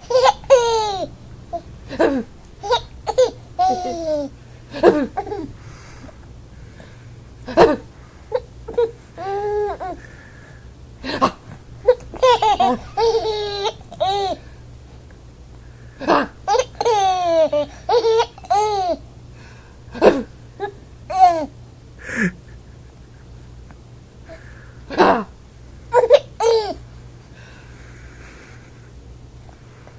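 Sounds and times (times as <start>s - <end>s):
baby laughing: 0.0s - 5.5s, 11.8s - 14.4s, 16.1s - 19.0s, 20.0s - 23.3s, 25.9s - 26.8s.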